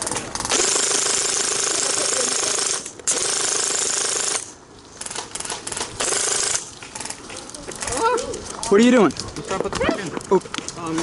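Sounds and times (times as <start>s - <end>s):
airsoft minigun firing bursts: 0.4s - 7.1s.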